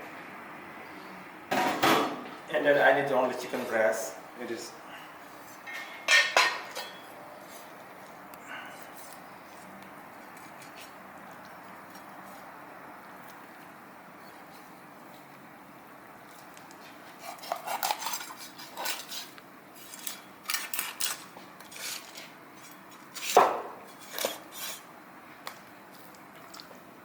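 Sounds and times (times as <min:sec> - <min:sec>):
dishes and utensils clattering: 0:05.6 - 0:07.1.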